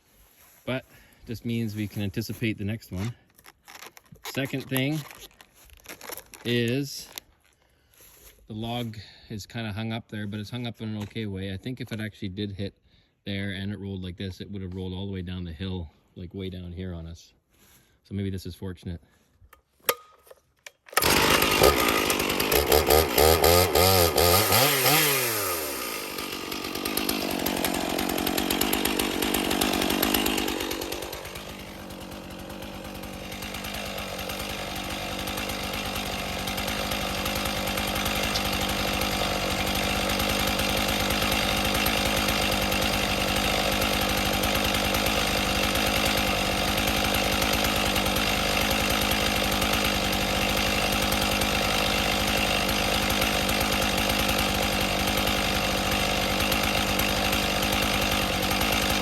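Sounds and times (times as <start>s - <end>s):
chainsaw revving: 20.9s - 59.0s.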